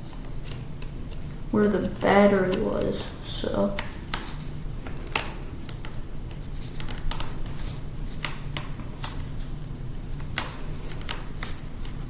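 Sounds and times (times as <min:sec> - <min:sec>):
steady low hum: 0:00.0 - 0:12.0
laptop parts clicking and tapping: 0:05.0 - 0:07.6, 0:10.2 - 0:12.0.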